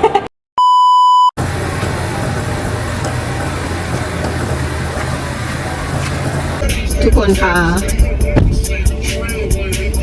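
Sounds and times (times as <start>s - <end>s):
short electronic beep: 0.6s - 1.3s
car interior road noise: 1.4s - 10.0s.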